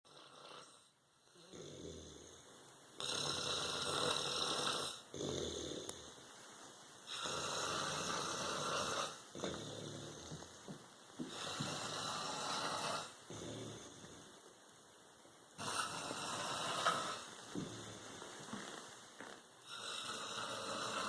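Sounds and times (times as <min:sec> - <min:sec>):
person snoring: 0:00.1 - 0:06.0, 0:07.1 - 0:10.5, 0:11.2 - 0:14.1, 0:15.6 - 0:17.9, 0:19.6 - 0:21.0.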